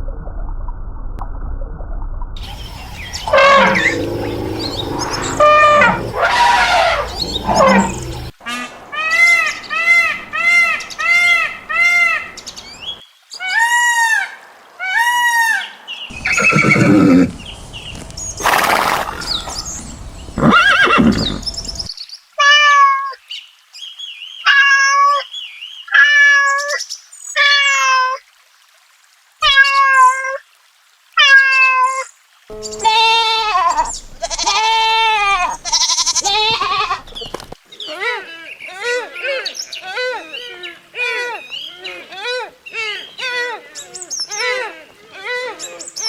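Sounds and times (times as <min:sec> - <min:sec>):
animal calls: 0:02.4 - 0:12.6, 0:13.4 - 0:21.9, 0:32.5 - 0:45.6.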